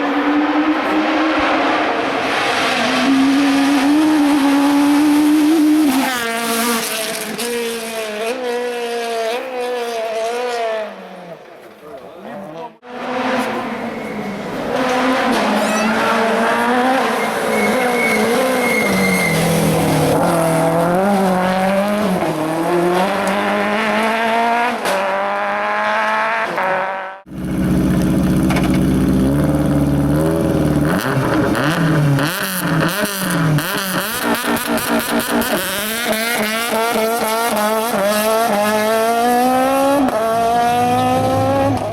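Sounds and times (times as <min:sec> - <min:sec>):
rally car engine revving: 0:00.0 - 0:11.6, 0:12.8 - 0:41.9
tyre squeal: 0:15.3 - 0:19.8.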